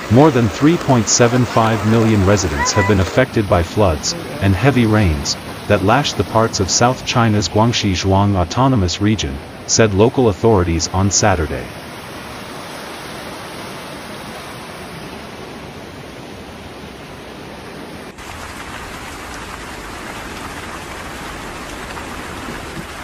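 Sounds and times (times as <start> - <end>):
heavy rain falling: 0.0 - 12.3, 18.0 - 23.0.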